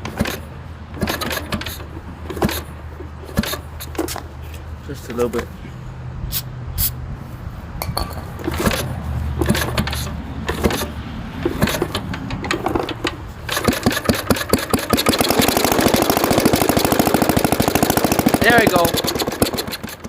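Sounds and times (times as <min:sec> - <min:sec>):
small engine sputtering and running: 0:08.4 - 0:20.0.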